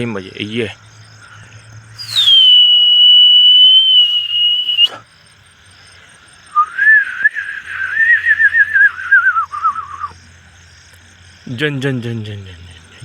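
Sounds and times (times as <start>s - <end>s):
person whistling: 2.0s - 5.0s, 6.6s - 10.1s.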